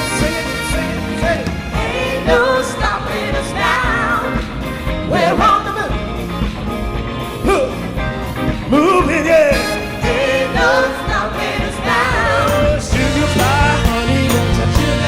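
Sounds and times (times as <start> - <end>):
soul band playing: 0.0 - 15.0
person singing: 11.8 - 15.0.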